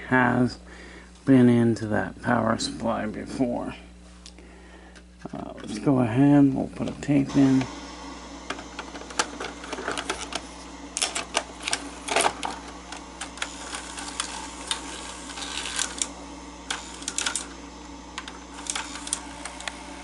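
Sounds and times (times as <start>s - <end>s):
low steady hum: 0.0s - 20.0s
tape mechanism clicks and clatters: 11.0s - 19.8s.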